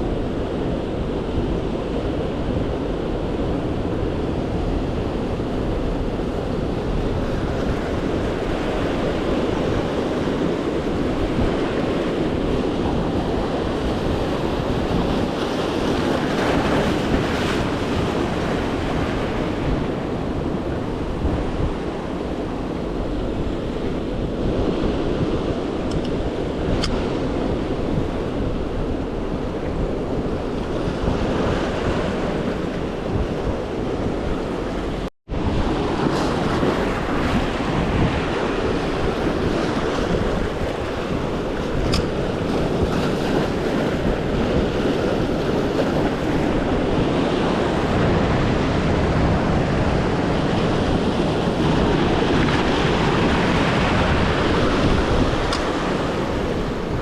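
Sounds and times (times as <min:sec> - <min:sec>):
ocean surf washing in: 0:00.0 - 0:57.0
wind buffeting microphone: 0:00.0 - 0:57.0.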